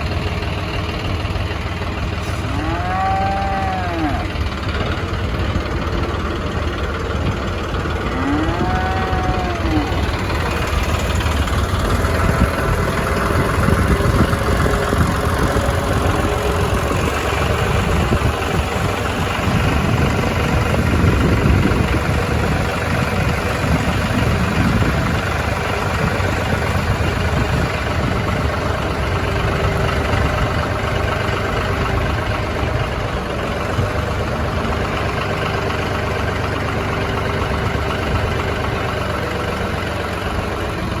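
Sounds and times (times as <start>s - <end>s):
engine running: 0.0s - 41.0s
cow mooing: 2.2s - 4.6s, 7.9s - 10.7s.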